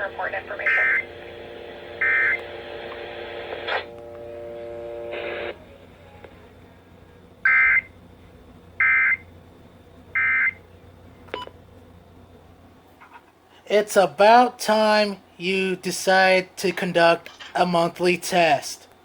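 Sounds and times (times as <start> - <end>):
steady low buzzing tone: 0.0 - 12.8.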